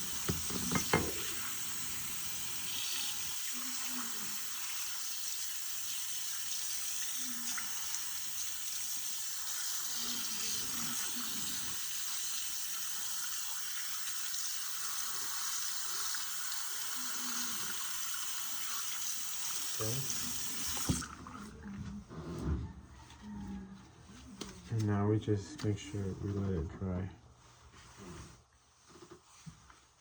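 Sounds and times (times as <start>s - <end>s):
water running from a tap: 0.0s - 21.3s.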